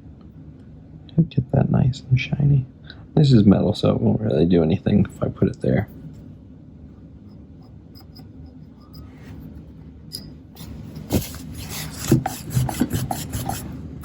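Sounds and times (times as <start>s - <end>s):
scratchy wiping on camera body: 10.6s - 13.8s.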